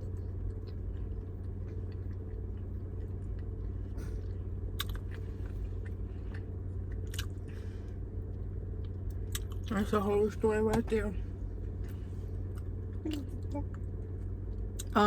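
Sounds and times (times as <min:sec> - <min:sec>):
person chewing food: 0:00.0 - 0:09.7, 0:11.6 - 0:15.0
steady low hum: 0:00.0 - 0:15.0.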